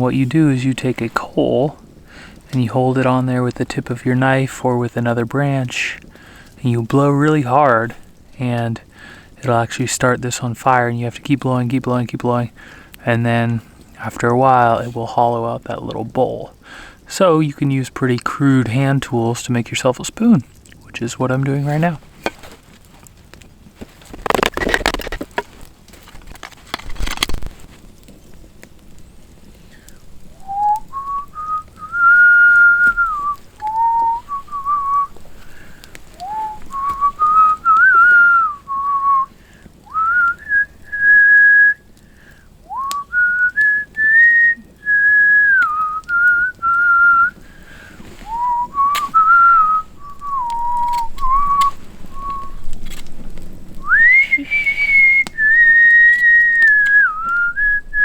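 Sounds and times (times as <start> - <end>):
person whistling a tune: 30.4 - 35.1, 36.2 - 39.3, 39.9 - 41.8, 42.7 - 47.4, 48.2 - 52.6, 53.8 - 58.0.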